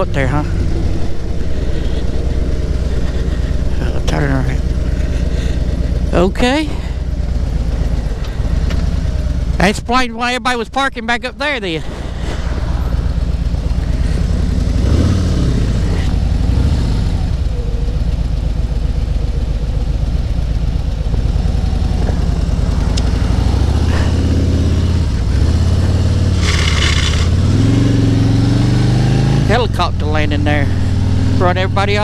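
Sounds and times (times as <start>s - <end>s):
motorcycle engine revving: 0.0s - 32.0s.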